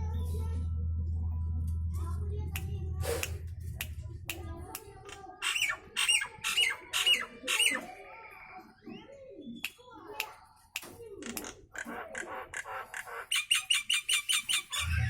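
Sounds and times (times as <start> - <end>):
starling calling loudly: 5.4 - 7.9, 11.8 - 15.0.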